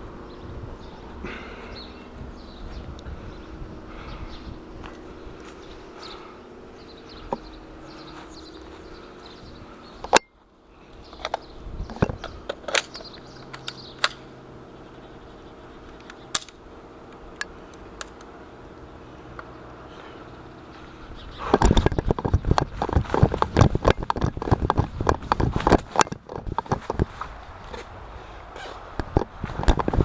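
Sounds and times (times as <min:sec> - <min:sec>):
airsoft rifle snapping shots: 0:12.6 - 0:14.3, 0:16.0 - 0:16.6.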